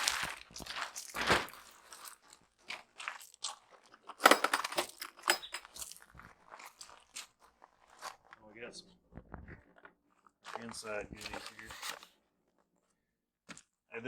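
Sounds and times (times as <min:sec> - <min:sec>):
packing material crunching and rustling: 0:00.0 - 0:08.4, 0:10.4 - 0:12.1.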